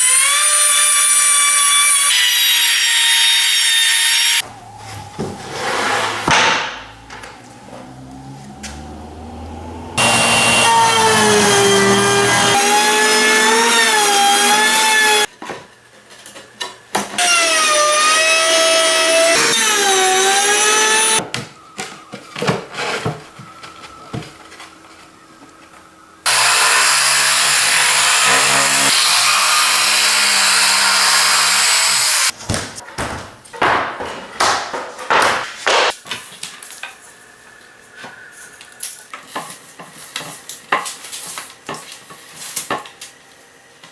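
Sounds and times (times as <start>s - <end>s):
power saw cutting plywood: 0.0s - 15.3s, 17.2s - 21.2s, 26.3s - 32.3s
power tool rushing noise: 3.2s - 15.3s.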